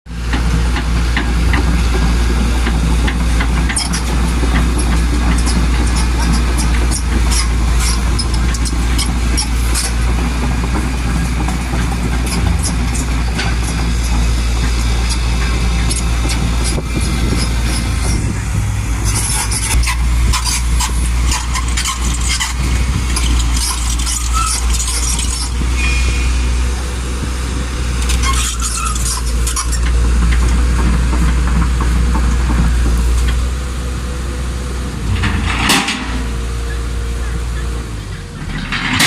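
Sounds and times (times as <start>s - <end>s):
excavator diesel engine running: 0.1s - 39.0s
metallic clanks and rattles: 0.3s - 18.4s, 35.0s - 36.6s, 38.0s - 39.0s.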